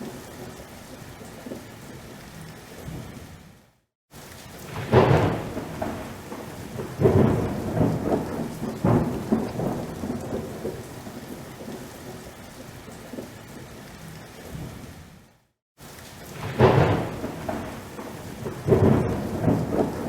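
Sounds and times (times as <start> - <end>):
steady rain: 0.0 - 20.0
thunder cracking and rumbling: 4.6 - 12.4, 16.2 - 20.0.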